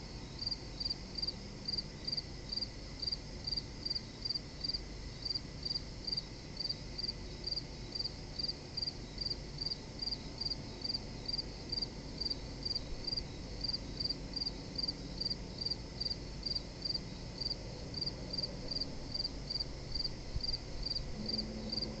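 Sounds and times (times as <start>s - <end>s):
crickets chirping: 0.0s - 22.0s.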